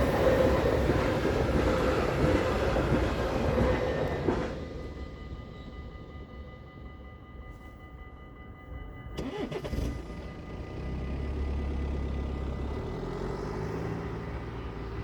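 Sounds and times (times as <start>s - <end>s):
vehicle engines pulling away: 9.2s - 15.0s.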